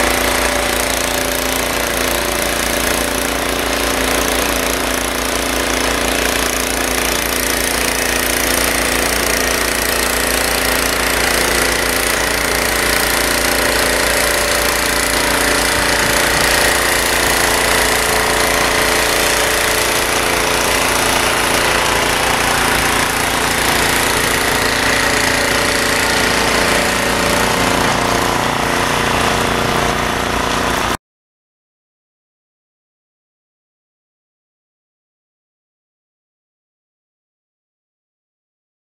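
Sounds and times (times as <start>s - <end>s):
snow blower engine droning: 0.0s - 31.0s.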